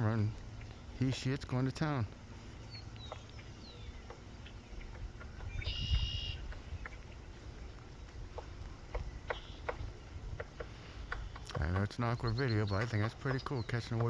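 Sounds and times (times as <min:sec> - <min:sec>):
woodpecker tapping on wood: 0:00.3 - 0:01.7, 0:02.9 - 0:14.0
short bird call: 0:05.6 - 0:06.4.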